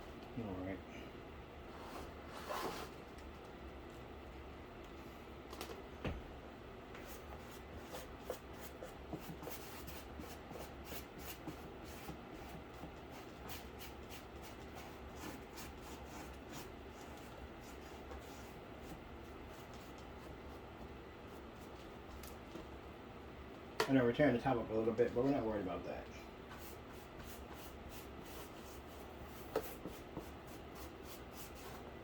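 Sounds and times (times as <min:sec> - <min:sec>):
dry brush scratching cardboard: 0:07.0 - 0:20.4, 0:26.6 - 0:31.9.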